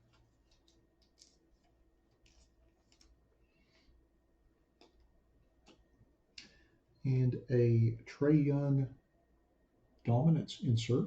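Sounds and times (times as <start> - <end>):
trading cards clicking and rustling: 0.0 - 3.2.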